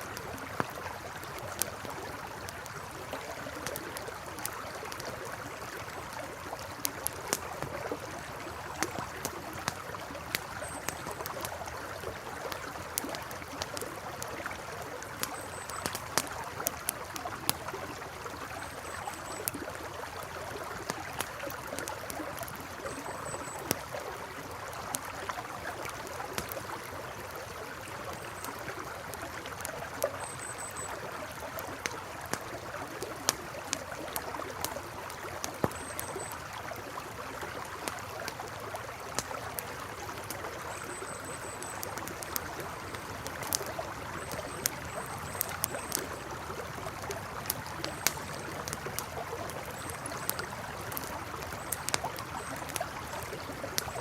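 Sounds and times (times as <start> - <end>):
campfire crackling and popping: 0.0 - 54.0
faint high chirps: 40.6 - 46.3.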